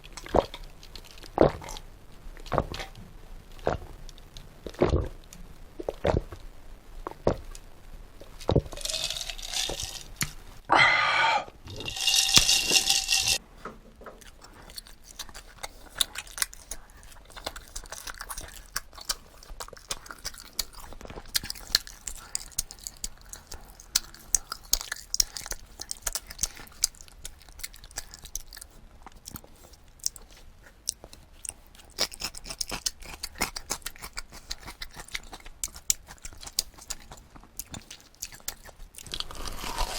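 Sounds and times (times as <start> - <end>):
person chewing with mouth clicks: 4.6 - 5.2, 14.0 - 39.9.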